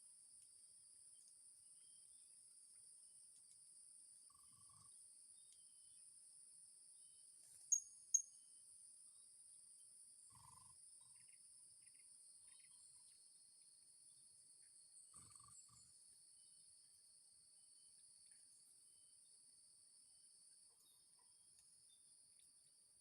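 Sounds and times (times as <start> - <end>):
insects droning: 0.0 - 23.0
bird chirps: 7.0 - 8.4, 10.3 - 13.2, 14.6 - 16.6.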